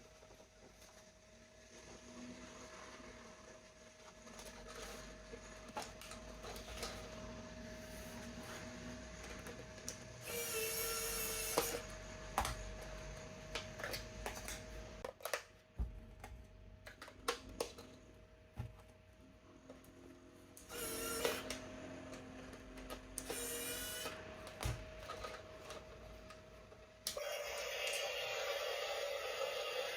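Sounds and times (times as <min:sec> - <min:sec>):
small electric toy motor whirring: 0:10.2 - 0:11.9, 0:20.6 - 0:21.6, 0:23.2 - 0:24.2, 0:27.2 - 0:29.9.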